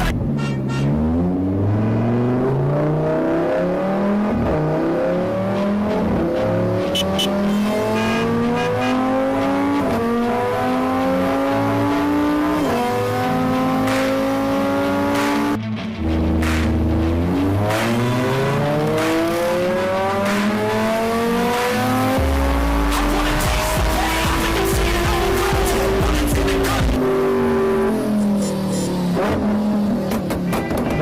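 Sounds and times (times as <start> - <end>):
car engine accelerating: 0.0 - 30.8.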